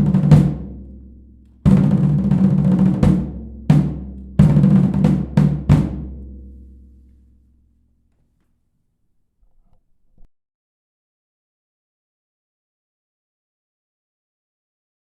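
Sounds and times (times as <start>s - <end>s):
snare drum rolls: 0.0s - 0.8s, 1.7s - 6.2s
deep drum strokes: 0.0s - 7.0s.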